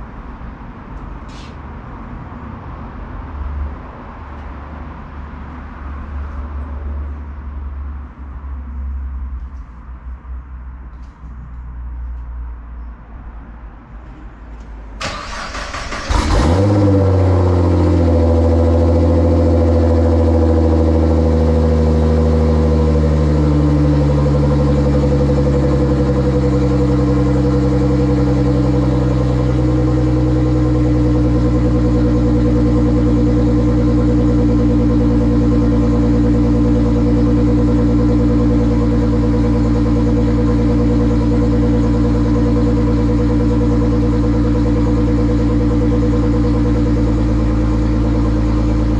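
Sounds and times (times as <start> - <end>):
car engine revving and idling: 15.0 - 48.9.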